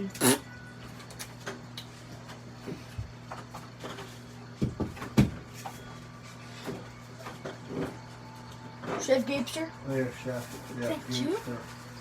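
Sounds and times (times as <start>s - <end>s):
kitchen knocks and clunks: 4.6s - 5.6s.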